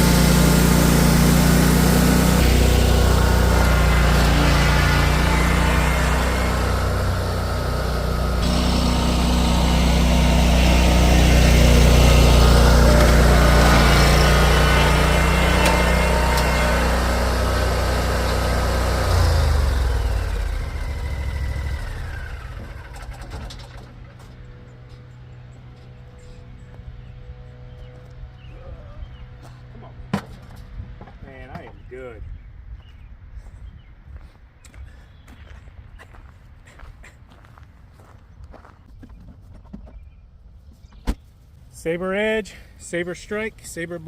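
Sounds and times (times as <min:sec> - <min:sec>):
lawn mower engine running: 0:00.0 - 0:31.6.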